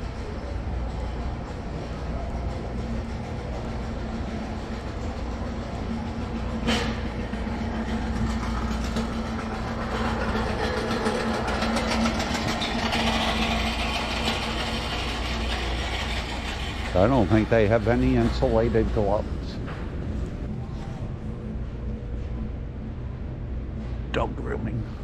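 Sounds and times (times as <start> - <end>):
low hum: 0.0 - 25.0
rolling rattle: 0.8 - 20.0.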